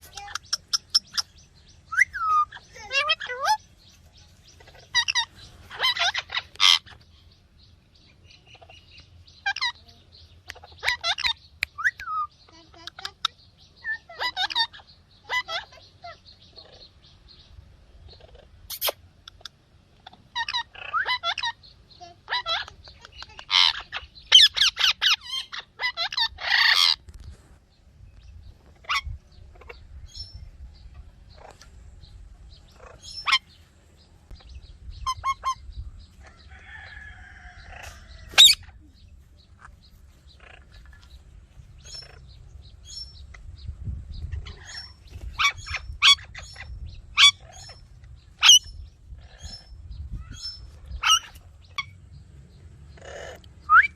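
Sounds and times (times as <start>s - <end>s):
parakeet chirping and squawking: 0.0s - 3.7s, 4.4s - 7.2s, 8.5s - 9.9s, 10.5s - 16.8s, 18.1s - 27.0s, 28.8s - 30.4s, 32.6s - 33.6s, 34.4s - 38.8s, 39.9s - 41.2s, 41.8s - 43.4s, 44.2s - 52.0s, 52.8s - 53.7s.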